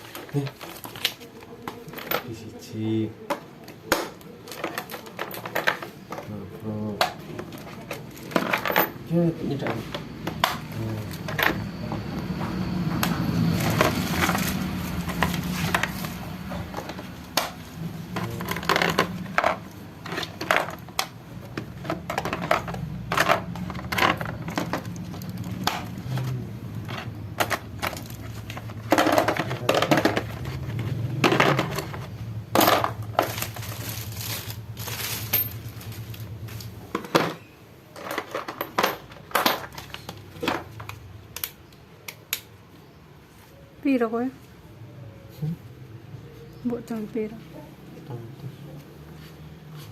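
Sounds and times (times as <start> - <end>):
hard plastic clicking and clattering: 3.2 - 6.4, 13.0 - 33.6.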